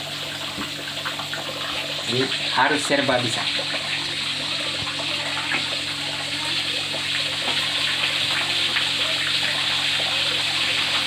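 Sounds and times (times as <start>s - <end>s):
meat sizzling in hot oil: 0.0s - 11.0s.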